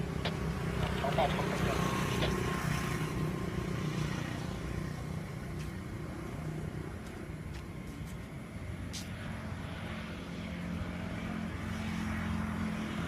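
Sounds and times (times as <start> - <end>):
vehicle engine running: 0.0 - 9.5.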